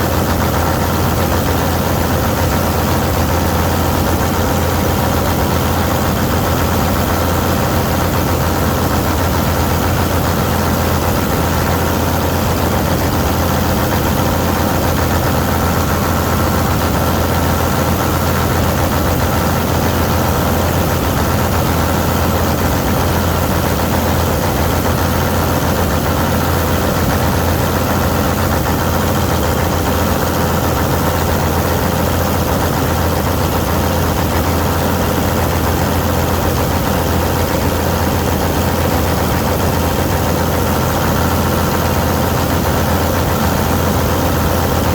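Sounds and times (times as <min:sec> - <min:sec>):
combine harvester engine drone: 0:00.0 - 0:44.9.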